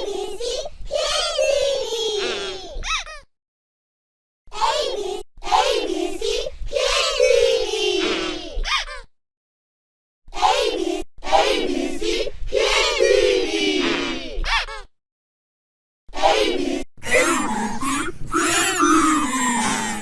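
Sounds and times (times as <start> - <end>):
pitch-shifted voices gliding: 17.0 - 20.0.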